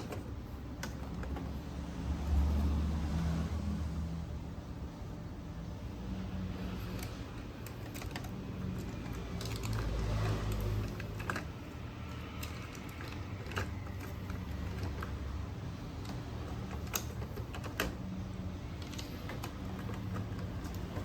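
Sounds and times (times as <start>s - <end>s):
plastic printer parts clicking: 0.0s - 1.8s, 6.8s - 21.0s.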